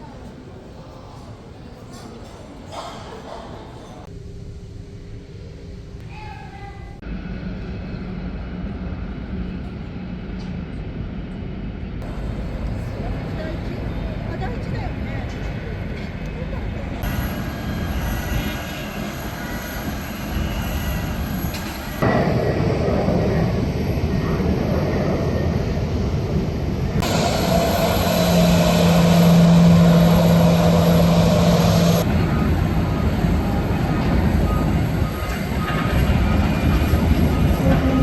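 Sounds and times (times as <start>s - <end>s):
jet engines running: 7.0s - 38.0s
steady low hum: 21.1s - 38.0s.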